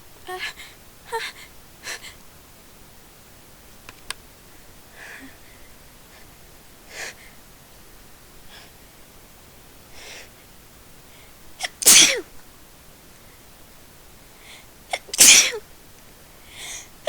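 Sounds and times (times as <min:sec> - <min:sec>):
faint breaths: 0:00.3 - 0:02.3, 0:04.4 - 0:07.6, 0:08.4 - 0:11.6, 0:13.2 - 0:14.8, 0:16.3 - 0:17.0
person sneezing: 0:11.6 - 0:12.3, 0:14.9 - 0:15.6.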